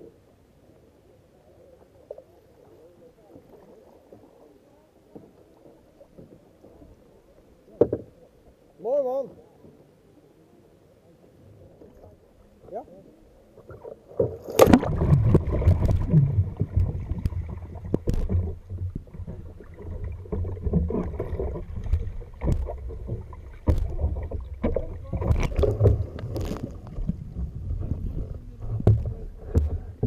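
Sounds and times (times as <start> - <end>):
water splashing around kayak: 0.0 - 30.0
knocks against boat: 20.3 - 26.1, 28.6 - 30.0.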